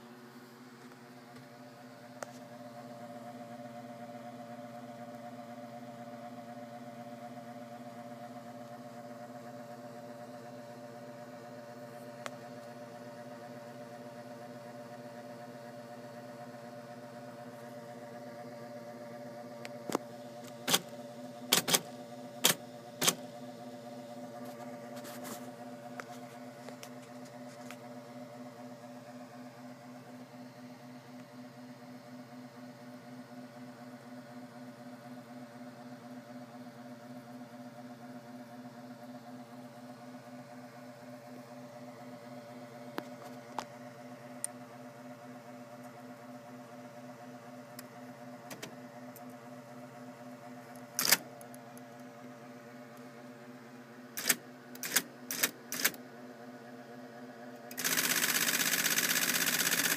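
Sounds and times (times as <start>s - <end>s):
typewriter motor humming: 19.6s - 23.4s, 50.7s - 51.8s, 54.2s - 56.0s, 57.6s - 59.9s
typewriter typing strikes: 20.5s - 20.9s, 21.5s - 23.3s, 51.0s - 51.2s, 54.2s - 56.0s, 57.7s - 59.9s.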